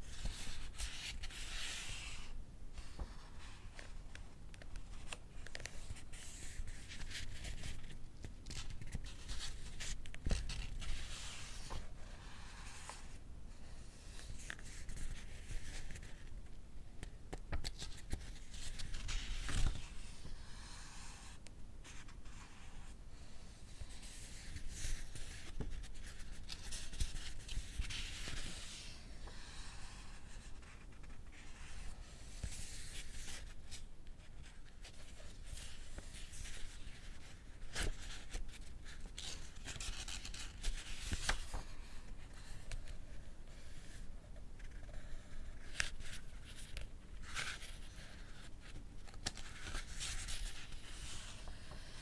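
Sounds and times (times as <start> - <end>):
book pages turning: 17.5 - 20.3, 34.4 - 43.0.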